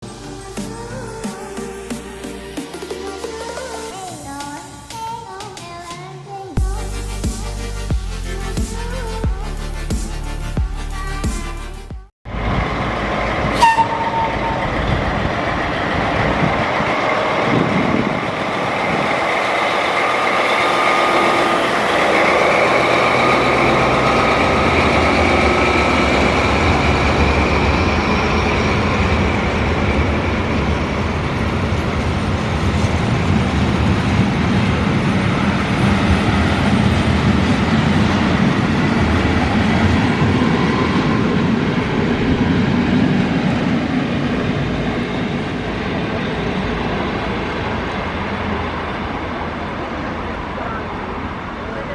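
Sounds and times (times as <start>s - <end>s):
train rolling on rails: 12.3s - 51.9s
faint high tone: 13.6s - 15.0s.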